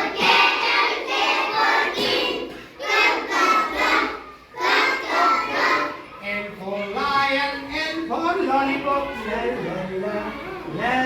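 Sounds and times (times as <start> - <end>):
children chanting in unison: 0.0 - 7.1.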